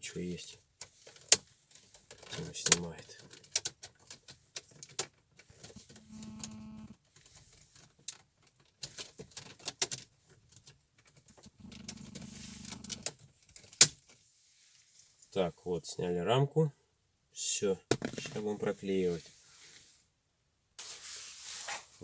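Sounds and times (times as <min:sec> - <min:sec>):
low buzzing creak of plastic: 0:06.0 - 0:07.0, 0:11.6 - 0:13.0.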